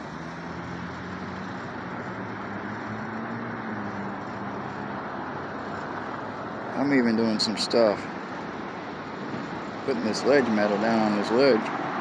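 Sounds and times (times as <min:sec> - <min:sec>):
street noise: 0:00.0 - 0:12.0
vehicle engine humming: 0:00.0 - 0:12.0.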